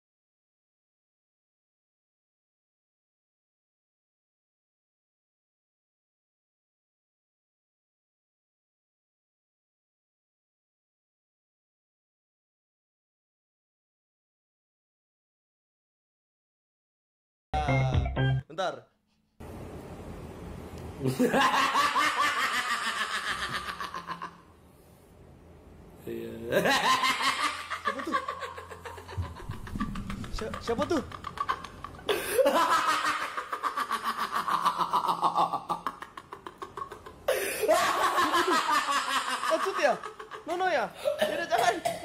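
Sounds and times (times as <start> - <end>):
steady rushing noise: 29.2 - 31.5.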